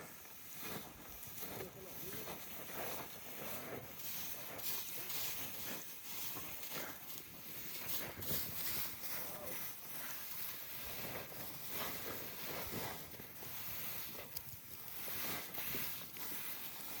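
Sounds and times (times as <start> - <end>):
dry straw rustling: 0.0 - 17.0.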